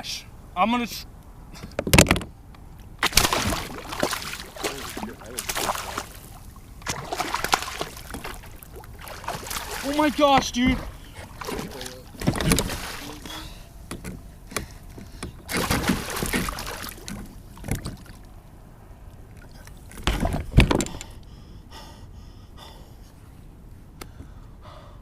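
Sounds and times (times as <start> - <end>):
knocks against a kayak: 1.6 - 2.3, 12.2 - 12.8, 20.0 - 21.0
water splashing: 2.8 - 13.7, 15.1 - 18.4.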